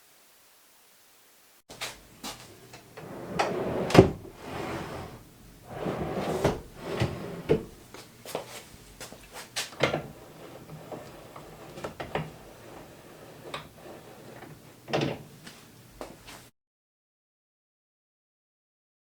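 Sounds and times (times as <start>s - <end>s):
short sliding scrapes: 1.8s - 8.7s, 9.3s - 14.8s.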